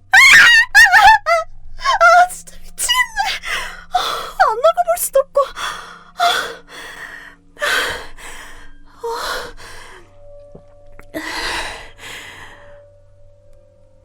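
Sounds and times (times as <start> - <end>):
woman gasping breaths: 5.6 - 10.1, 11.2 - 12.8.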